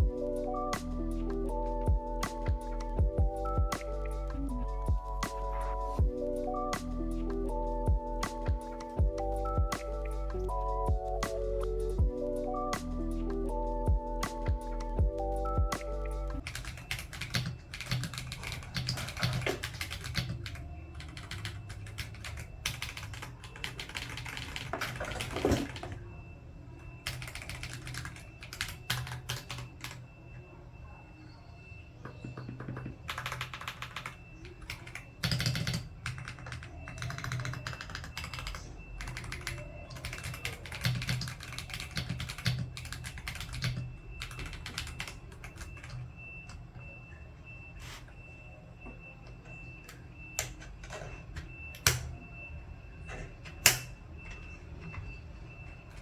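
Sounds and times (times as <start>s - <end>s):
mechanical keyboard typing: 0.0s - 26.0s, 27.0s - 30.0s, 32.1s - 46.0s.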